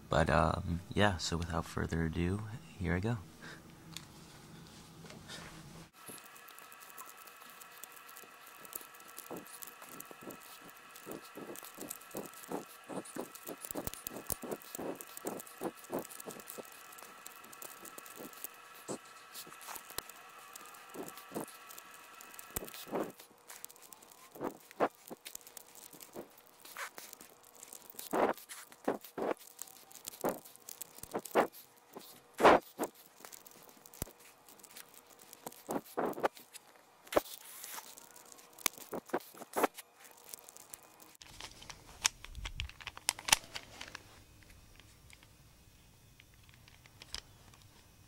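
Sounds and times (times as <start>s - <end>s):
puzzle cube layers clicking: 6.0s - 36.2s.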